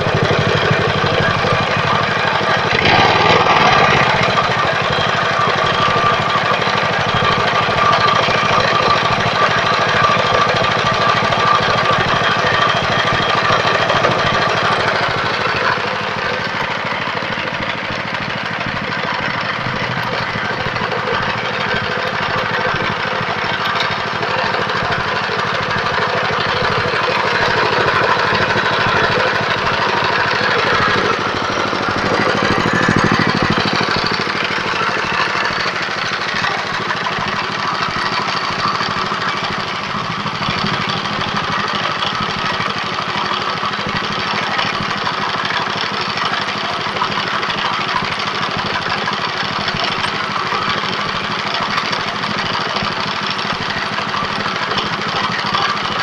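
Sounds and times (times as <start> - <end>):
pellet machine droning: 0.0 - 56.0.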